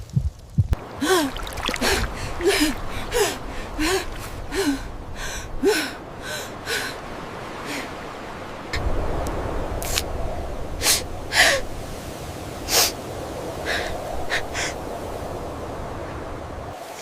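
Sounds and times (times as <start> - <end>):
low heartbeat-like thuds: 0.0 - 0.8
breathy gasping cries: 0.8 - 7.0.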